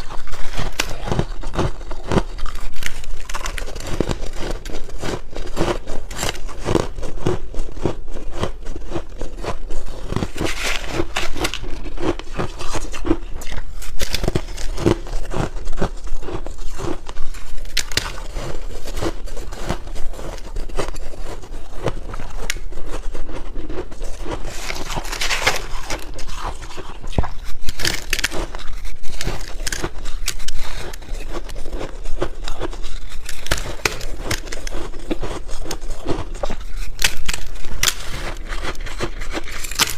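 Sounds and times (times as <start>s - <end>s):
chewing crunchy ice: 0.0s - 39.9s.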